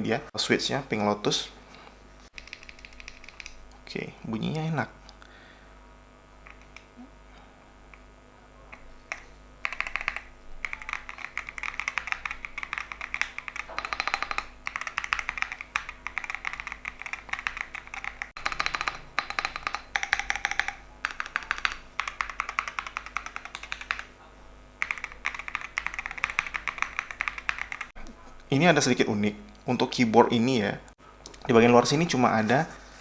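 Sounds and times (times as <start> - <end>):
mechanical keyboard typing: 2.3 - 3.6, 9.1 - 24.1, 24.8 - 28.0.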